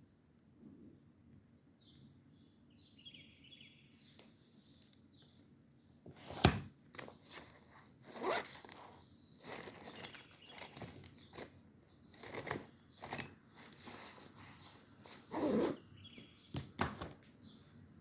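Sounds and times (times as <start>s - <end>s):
paper rustling: 7.0s - 11.6s.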